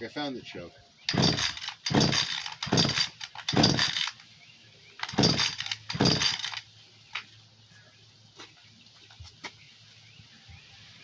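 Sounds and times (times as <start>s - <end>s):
chainsaw starter cord pulls: 1.1s - 4.2s, 5.0s - 6.6s.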